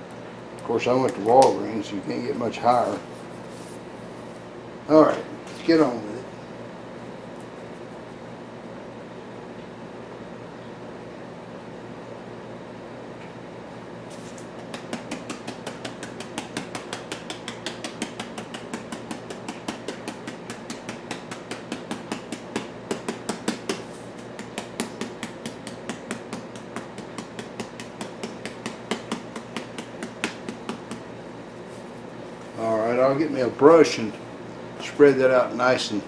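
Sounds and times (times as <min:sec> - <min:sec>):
rapid light tapping: 0:14.6 - 0:31.1.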